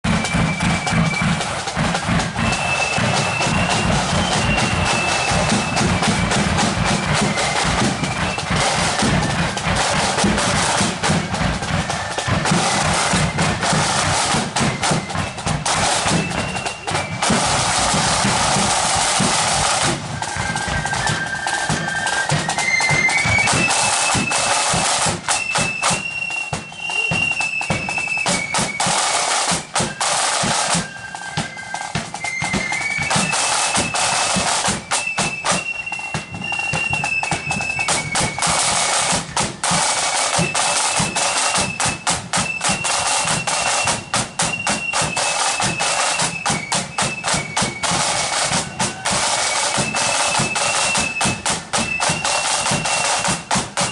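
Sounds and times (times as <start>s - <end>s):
bass drum beats: 0.0s - 25.3s
high flute melody: 0.0s - 53.9s
snare drum rolls: 0.0s - 53.9s.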